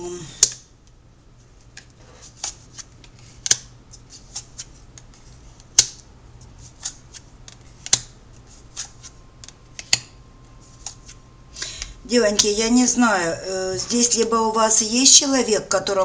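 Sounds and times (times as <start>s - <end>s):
cards clicking and snapping: 0.4s - 0.7s, 1.6s - 6.0s, 6.7s - 11.9s.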